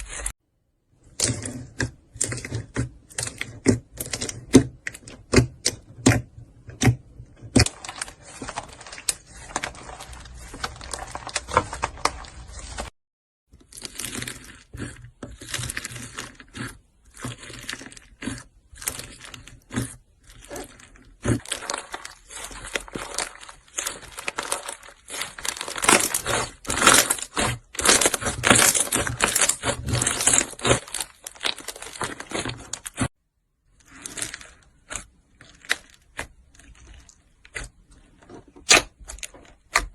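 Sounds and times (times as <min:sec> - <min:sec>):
slime crackling and popping: 0:13.8 - 0:33.1.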